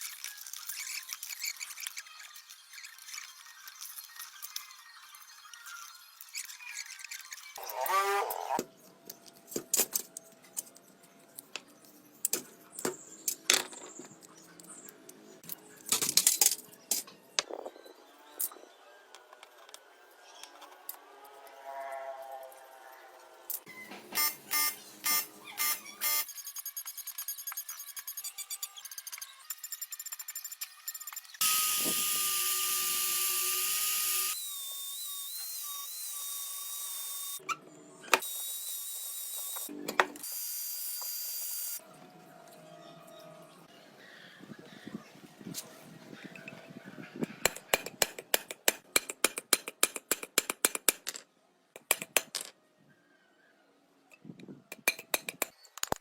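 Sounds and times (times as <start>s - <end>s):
power tool whining: 7.6s - 8.6s, 31.4s - 37.4s.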